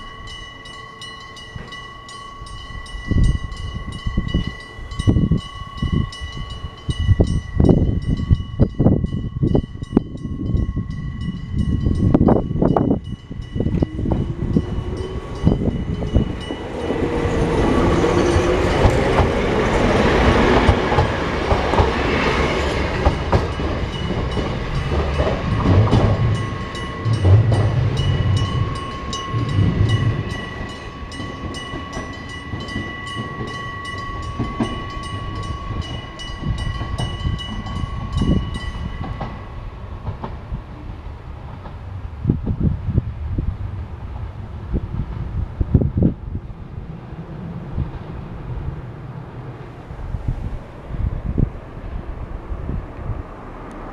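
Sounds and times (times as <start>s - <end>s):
train wheels clattering: 11.5s - 40.6s.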